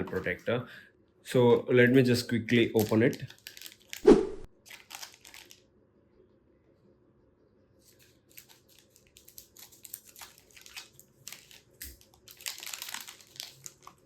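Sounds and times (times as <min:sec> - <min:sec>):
packaging rustling and crinkling: 0:02.5 - 0:05.7, 0:07.8 - 0:14.0.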